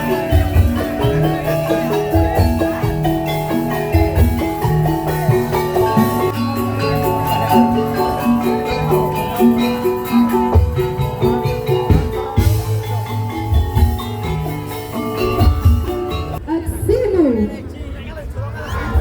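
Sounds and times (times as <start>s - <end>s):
bright xylophone-like melody: 0.0s - 16.4s
held bass notes: 0.0s - 16.4s
low drum thumping: 0.0s - 16.4s.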